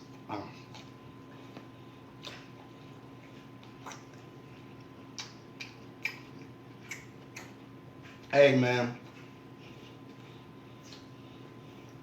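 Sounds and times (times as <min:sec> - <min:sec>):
faint electrical hum: 0:00.0 - 0:12.0
chewing: 0:00.1 - 0:08.3, 0:09.0 - 0:11.2
wet mouth clicks and lip smacks: 0:03.6 - 0:04.3, 0:05.1 - 0:07.6.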